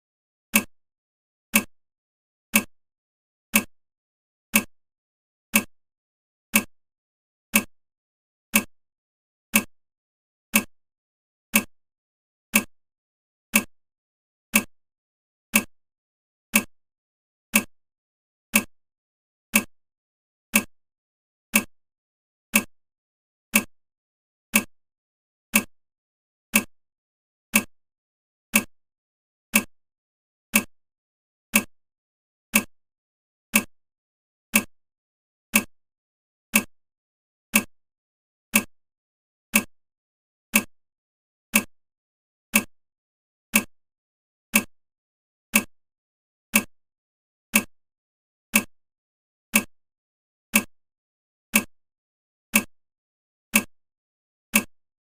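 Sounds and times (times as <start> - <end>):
clock ticking: 0.5 - 0.7, 2.5 - 2.7, 4.5 - 4.7, 5.5 - 5.7, 6.5 - 6.7, 7.5 - 7.7, 8.5 - 8.7, 9.5 - 9.7, 10.5 - 10.7, 11.5 - 11.7, 12.5 - 12.7, 13.5 - 13.7, 14.5 - 14.7, 15.5 - 15.7, 16.5 - 16.7, 17.5 - 17.7, 18.5 - 18.7, 19.5 - 19.7, 20.5 - 20.7, 21.5 - 21.7, 22.5 - 22.7, 23.5 - 23.7, 24.5 - 24.7, 25.5 - 25.7, 26.5 - 26.7, 27.5 - 27.7, 28.5 - 28.7, 29.5 - 29.7, 30.5 - 30.7, 31.5 - 31.7, 32.5 - 32.7, 33.5 - 33.7, 34.5 - 34.7, 35.5 - 35.7, 36.5 - 36.7, 37.5 - 37.7, 38.5 - 38.7, 39.5 - 39.7, 40.5 - 40.7, 41.5 - 41.7, 42.5 - 42.7, 43.5 - 43.7, 44.5 - 44.7, 46.5 - 46.7, 48.5 - 48.7, 50.5 - 50.7, 51.5 - 51.7, 52.5 - 52.7, 54.5 - 54.7.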